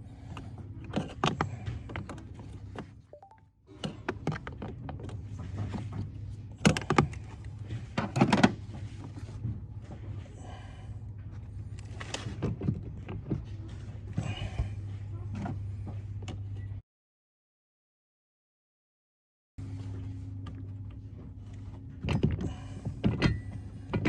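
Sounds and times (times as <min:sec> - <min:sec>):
steady low hum: 0:19.6 - 0:24.0.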